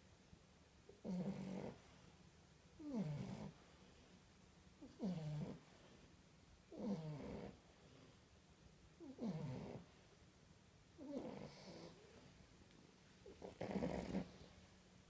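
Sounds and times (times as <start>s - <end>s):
puppies snoring: 0.8s - 8.3s, 9.0s - 10.2s, 10.9s - 12.4s, 13.2s - 14.6s.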